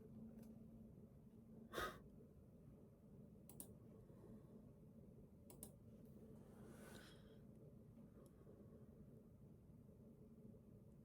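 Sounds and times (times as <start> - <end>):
faint clicks: 3.5 - 3.8.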